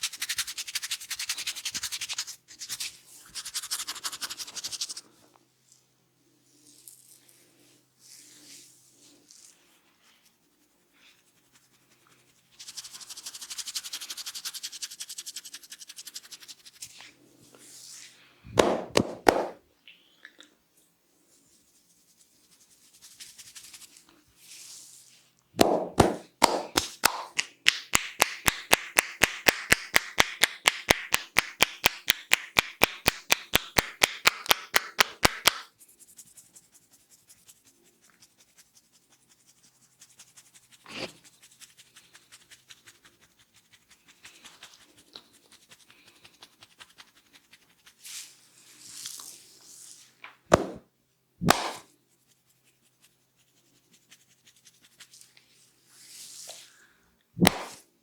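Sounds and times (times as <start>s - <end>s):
hair rubbed and scratched: 0.0s - 5.8s, 6.4s - 19.6s, 21.3s - 50.8s, 51.4s - 56.8s, 57.4s - 57.9s
fast sharp taps: 18.5s - 19.6s, 25.6s - 35.7s
sharp slaps: 18.5s - 19.6s, 25.6s - 35.7s, 50.5s - 50.8s, 51.4s - 51.9s, 57.4s - 57.8s.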